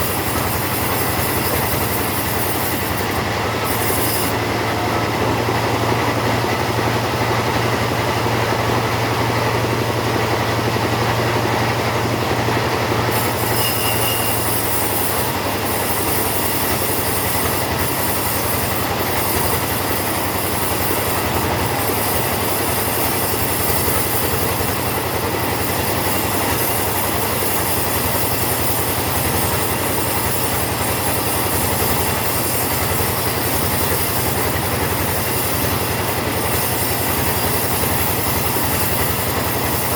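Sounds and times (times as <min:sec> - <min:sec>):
chainsaw cutting wood: 0:00.0 - 0:04.6, 0:12.9 - 0:39.9.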